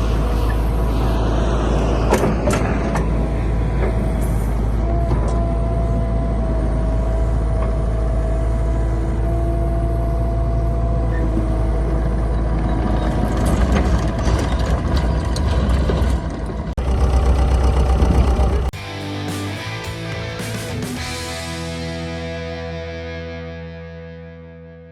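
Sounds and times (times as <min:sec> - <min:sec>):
diesel engine with whine: 0:00.0 - 0:24.2
rattles and clanks: 0:12.5 - 0:18.7.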